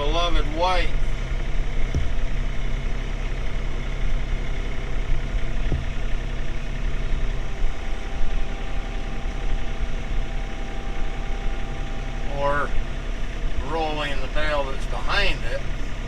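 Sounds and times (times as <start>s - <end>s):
tractor diesel engine running: 0.0s - 16.0s
dull knock: 1.8s - 2.3s, 5.6s - 6.0s.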